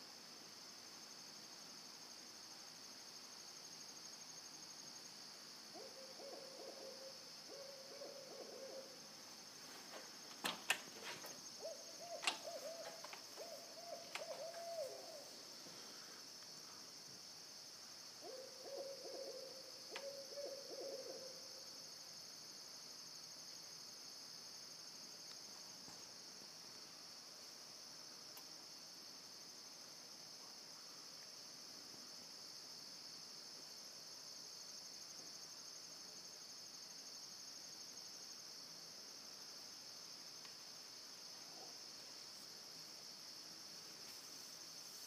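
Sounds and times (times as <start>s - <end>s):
crickets trilling: 0.0s - 45.0s
owls hooting: 5.8s - 9.0s, 11.6s - 15.3s, 18.2s - 21.4s
sharp clicks: 12.2s - 13.2s.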